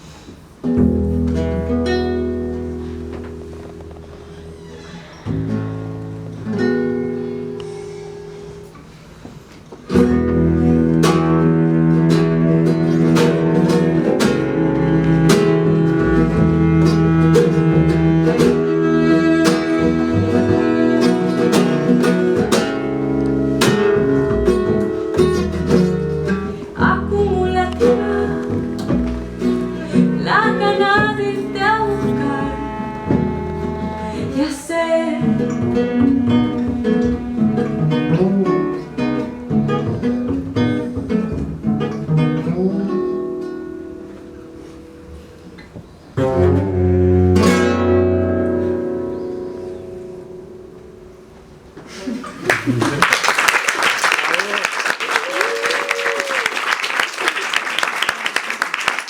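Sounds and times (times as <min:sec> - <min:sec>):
acoustic guitar: 0:00.0 - 0:53.2
bowed string instrument: 0:09.9 - 0:51.6.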